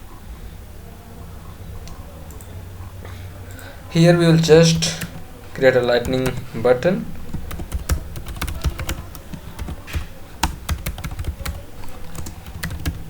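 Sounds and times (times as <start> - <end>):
keyboard typing: 4.6 - 13.0.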